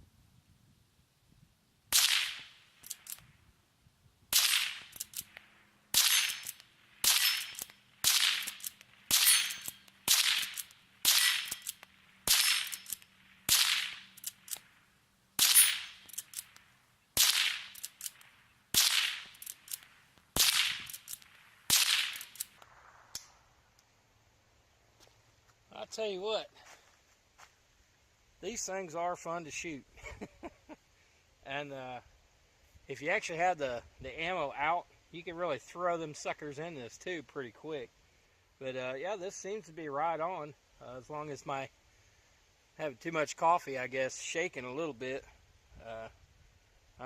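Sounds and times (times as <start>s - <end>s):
rifle shots with echo: 1.9s - 3.2s, 4.3s - 14.8s, 15.4s - 16.6s, 17.2s - 23.5s.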